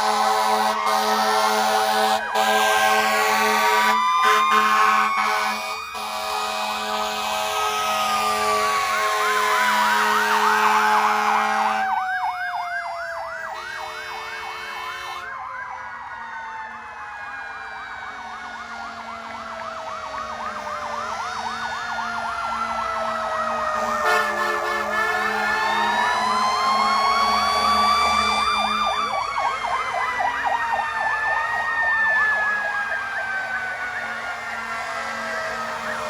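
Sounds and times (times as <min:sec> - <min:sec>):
steady horn tones: 0:00.0 - 0:11.8, 0:13.5 - 0:15.3, 0:22.6 - 0:30.7
siren wailing: 0:00.0 - 0:36.0
siren yelping: 0:00.0 - 0:36.0.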